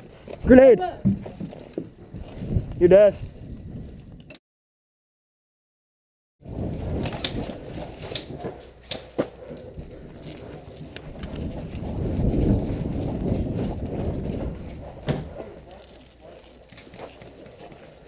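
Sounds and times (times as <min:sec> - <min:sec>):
low rumbling handling noise: 0:06.5 - 0:18.0.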